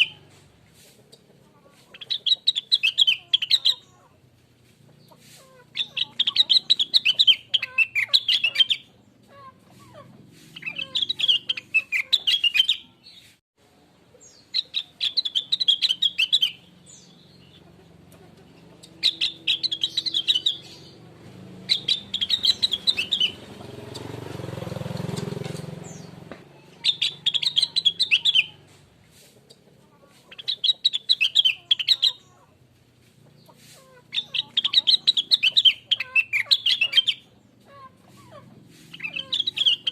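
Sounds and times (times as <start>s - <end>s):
bird singing chattering notes: 1.9s - 4.0s, 5.0s - 9.2s, 10.6s - 13.3s, 14.2s - 28.7s, 30.3s - 32.4s, 33.4s - 37.4s, 38.9s - 39.9s.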